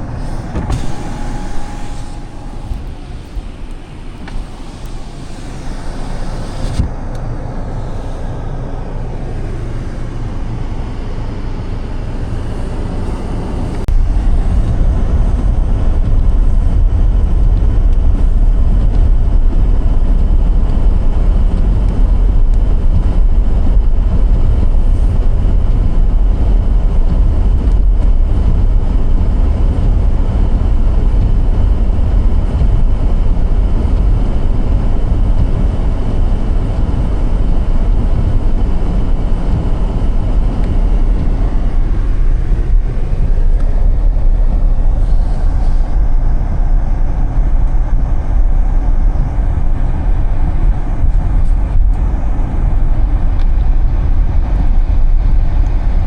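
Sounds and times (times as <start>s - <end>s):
tyres rumbling on snowy road: 0.0s - 56.0s.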